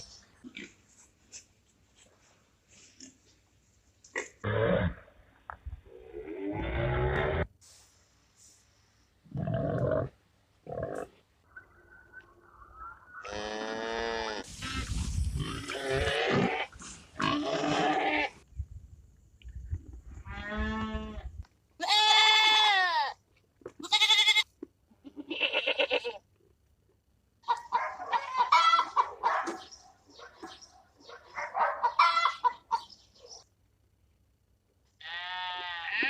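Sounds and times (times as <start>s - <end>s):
goats bleating: 15.5s - 18.4s, 21.8s - 23.2s, 23.8s - 26.2s, 35.0s - 36.0s.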